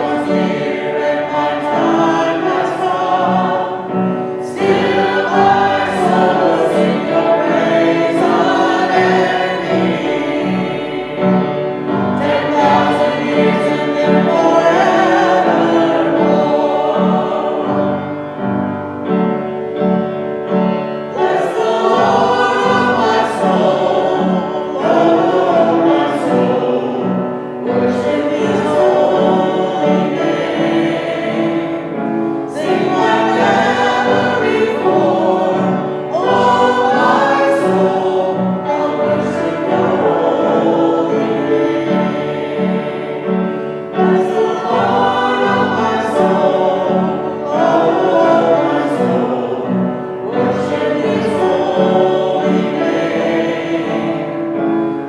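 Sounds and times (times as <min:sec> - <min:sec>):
instrumental accompaniment: 0:00.0 - 0:55.0
voices singing a hymn: 0:00.0 - 0:55.0.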